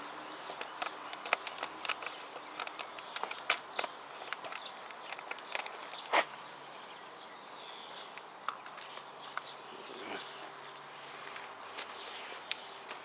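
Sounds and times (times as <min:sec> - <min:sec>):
light clicks and taps: 0:00.3 - 0:06.2.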